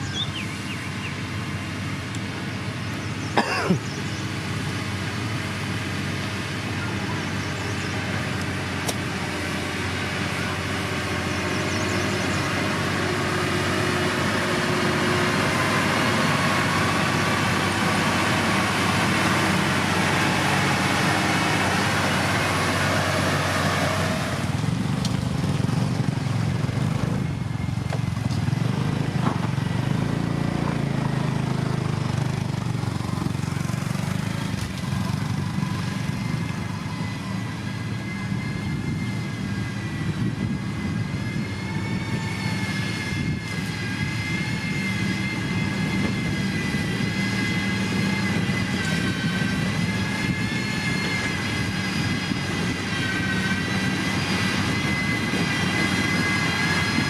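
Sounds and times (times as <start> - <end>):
diesel engine running: 0.0 - 57.0
steady high whine: 0.0 - 57.0.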